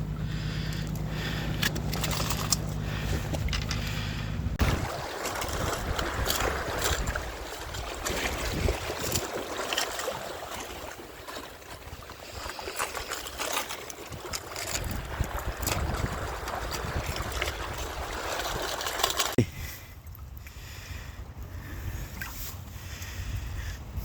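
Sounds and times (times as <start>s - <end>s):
wind buffeting microphone: 0.0s - 10.9s, 14.1s - 18.8s
sea water rushing over rocks: 4.6s - 19.4s.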